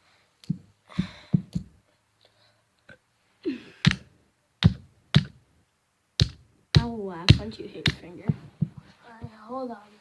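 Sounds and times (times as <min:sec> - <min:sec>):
knocks on plastic cube: 0:06.2 - 0:08.8.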